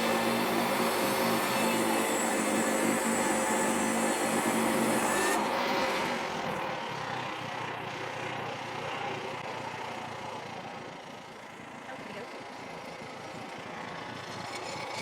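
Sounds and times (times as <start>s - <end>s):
sawmill engine running: 0.0s - 6.8s.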